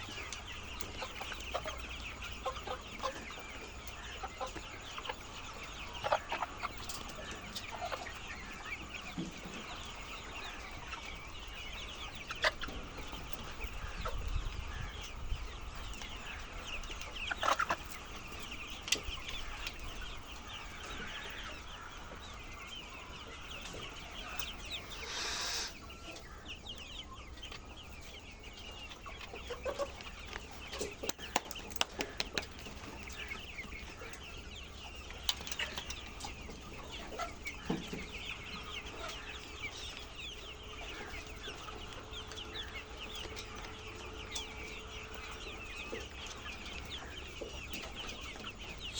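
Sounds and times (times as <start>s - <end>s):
hens clucking: 0.0s - 48.9s.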